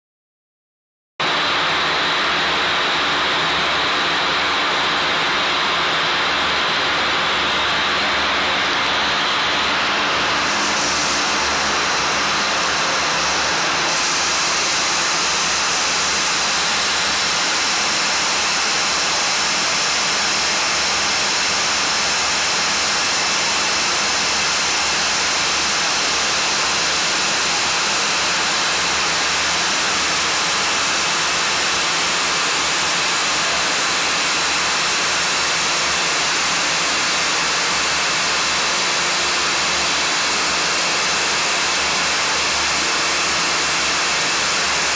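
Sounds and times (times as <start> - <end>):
twisting machine whirring hiss: 8.8 - 19.6.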